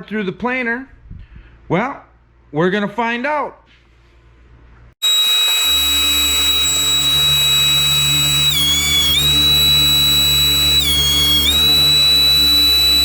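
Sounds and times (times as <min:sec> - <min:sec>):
thickness planer whining: 0:05.0 - 0:13.0.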